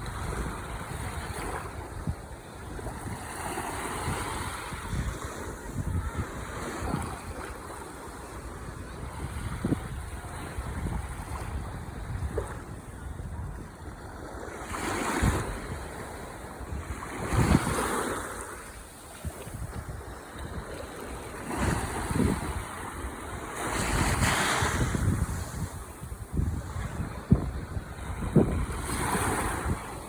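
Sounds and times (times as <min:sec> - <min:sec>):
ocean waves breaking on shore: 0:00.0 - 0:30.0
wind rumbling on microphone: 0:00.0 - 0:30.0.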